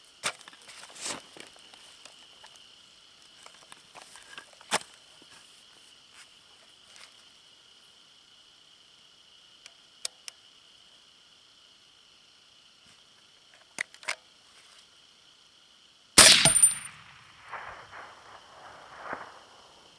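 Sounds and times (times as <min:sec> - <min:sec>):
high insect drone: 0:00.0 - 0:19.9
sharp crack: 0:16.2 - 0:19.9.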